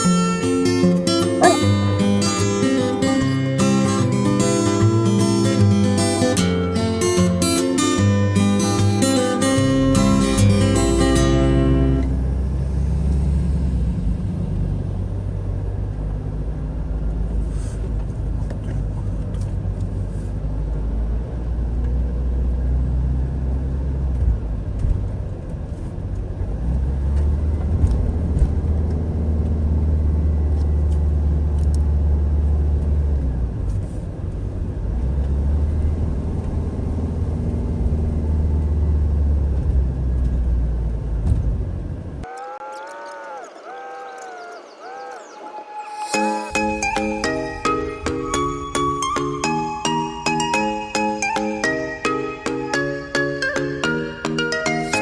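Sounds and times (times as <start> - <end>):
vehicle engine and road rumble: 11.7 - 42.2.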